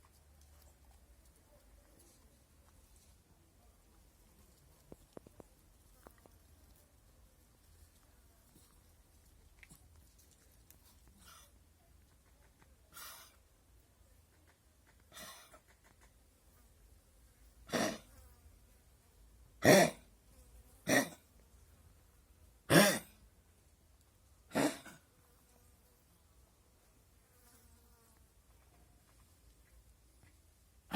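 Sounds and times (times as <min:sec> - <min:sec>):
dog coughing: 0:15.1 - 0:15.6, 0:17.7 - 0:18.1, 0:19.6 - 0:20.0, 0:20.9 - 0:21.2, 0:22.7 - 0:23.2, 0:24.5 - 0:25.0.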